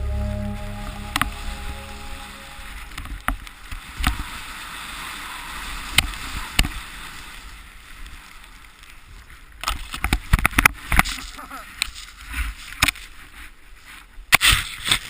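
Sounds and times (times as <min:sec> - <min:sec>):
background music: 0:00.0 - 0:03.4.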